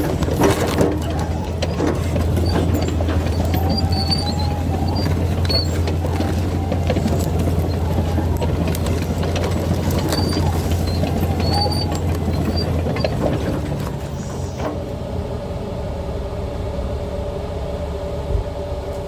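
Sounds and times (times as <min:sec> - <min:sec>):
steel tracks clattering: 0:00.0 - 0:14.9
bulldozer diesel engine running: 0:00.0 - 0:19.0
short high squeaks: 0:01.0 - 0:14.6.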